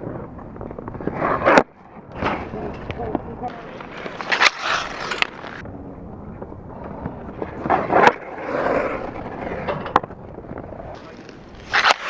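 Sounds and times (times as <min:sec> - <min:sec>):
puck struck with sharp cracks: 0:00.6 - 0:05.6, 0:09.9 - 0:12.0
hockey stick scraping ice: 0:03.5 - 0:05.6, 0:11.0 - 0:12.0.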